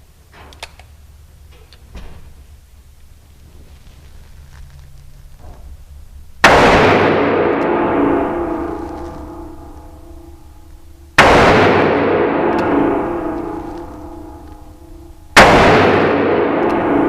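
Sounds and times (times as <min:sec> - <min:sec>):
revolver shots with ringing decay: 0:06.4 - 0:10.5, 0:11.1 - 0:17.0.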